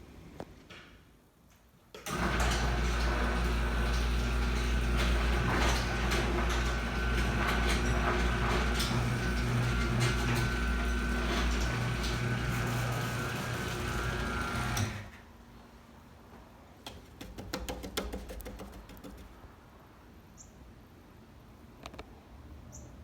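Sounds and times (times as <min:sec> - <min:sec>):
garage door opener motor running: 0:02.0 - 0:15.2.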